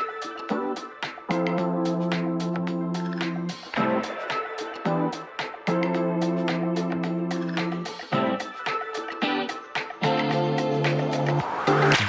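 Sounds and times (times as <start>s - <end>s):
steady beat: 0.0s - 12.0s.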